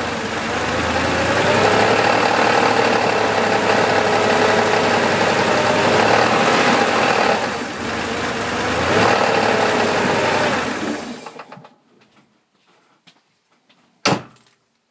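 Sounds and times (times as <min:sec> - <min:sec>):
car engine running: 0:00.0 - 0:11.4
engine running down: 0:00.0 - 0:11.6.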